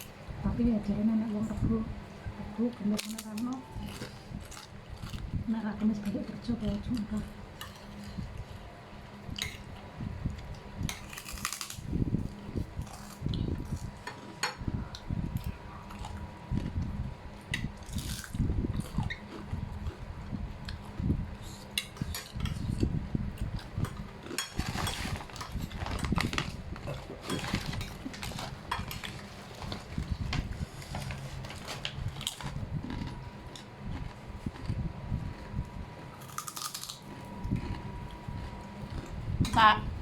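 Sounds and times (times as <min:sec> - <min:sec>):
faint high hum: 0:00.0 - 0:40.0
person chewing: 0:03.8 - 0:05.4, 0:09.4 - 0:16.9, 0:17.6 - 0:25.1, 0:32.1 - 0:39.3.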